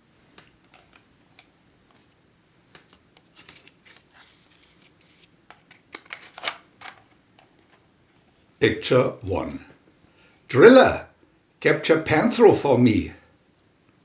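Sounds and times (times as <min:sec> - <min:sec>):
paper handling clicks and rustles: 0:00.3 - 0:07.9.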